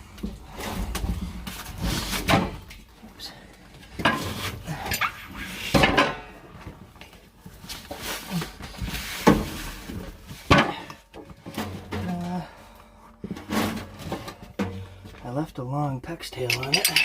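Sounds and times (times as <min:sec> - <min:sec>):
knocks and scraping of piping: 0:07.6 - 0:12.2.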